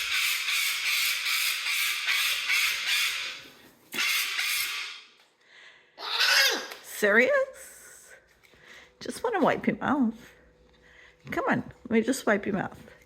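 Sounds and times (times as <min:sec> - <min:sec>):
parrot screaming: 0:00.0 - 0:03.4, 0:04.0 - 0:05.0, 0:06.0 - 0:06.8.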